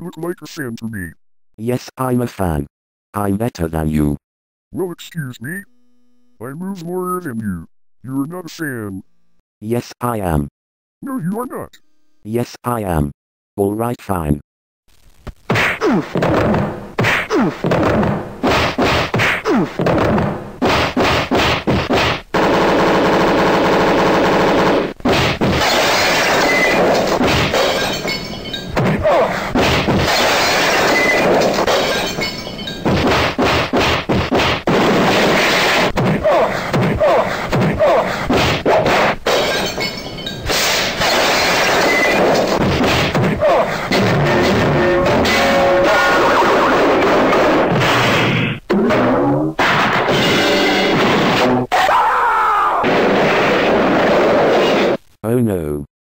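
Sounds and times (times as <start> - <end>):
noisy clatter: 15.3 - 49.0
whacks thuds and crashes: 15.5 - 22.4, 24.9 - 45.7, 46.6 - 51.7, 52.8 - 55.0.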